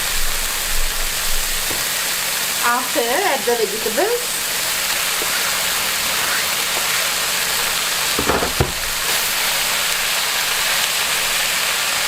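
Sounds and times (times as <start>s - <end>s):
food sizzling in hot oil: 0.0s - 12.0s
clatter of knocks: 8.2s - 8.8s.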